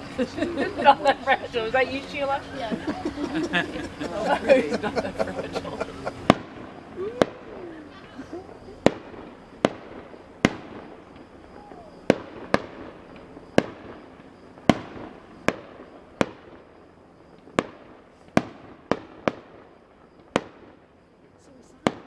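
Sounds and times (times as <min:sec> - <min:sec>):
fireworks sharp bangs: 0:00.0 - 0:22.0.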